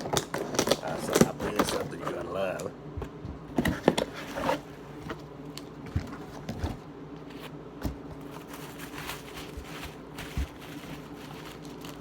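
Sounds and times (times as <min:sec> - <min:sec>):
wrapping clicks and rustles: 0:08.3 - 0:12.0.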